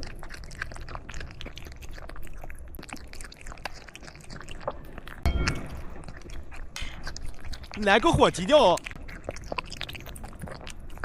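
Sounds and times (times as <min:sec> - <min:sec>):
cat chewing and crunching food: 0:00.0 - 0:11.0
loud bump: 0:05.3 - 0:06.1.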